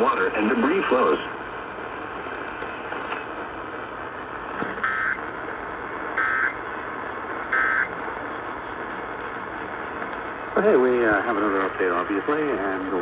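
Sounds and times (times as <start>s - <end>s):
radio hiss: 0.0s - 13.0s
digital data bursts: 4.8s - 5.2s, 6.2s - 6.6s, 7.5s - 8.0s.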